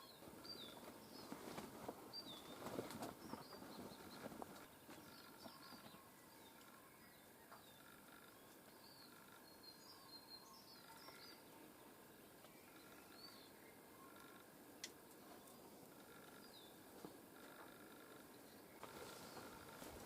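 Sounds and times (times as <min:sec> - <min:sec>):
small songbirds chirping: 0:00.0 - 0:20.0.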